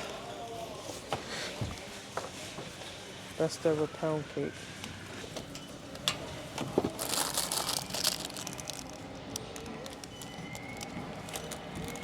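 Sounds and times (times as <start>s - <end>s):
plastic snack packaging crinkling: 6.8s - 12.0s.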